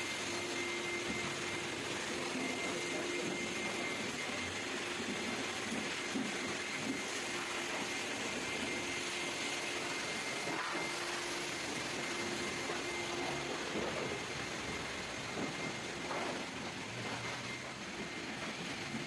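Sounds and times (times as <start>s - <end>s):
vacuum cleaner running: 0.0s - 19.0s.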